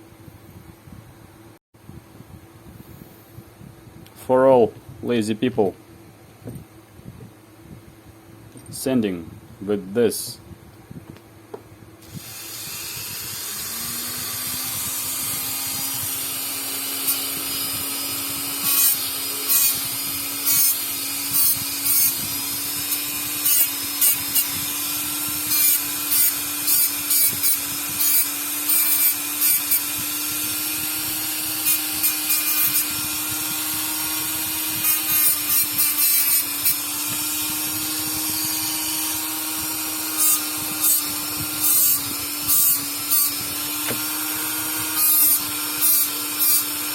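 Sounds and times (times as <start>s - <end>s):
electric sanding tool spinning: 12.0s - 46.9s.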